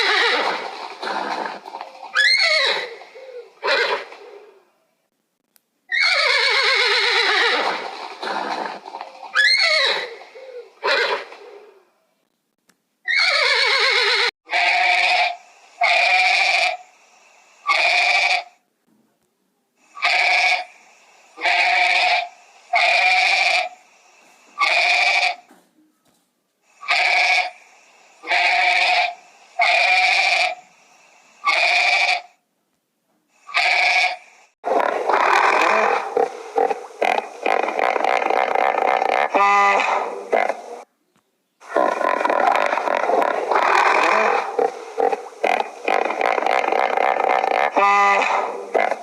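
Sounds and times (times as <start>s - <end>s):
animal calling: 0.0s - 4.6s, 5.9s - 11.8s, 13.1s - 16.8s, 33.5s - 40.8s, 41.6s - 49.0s.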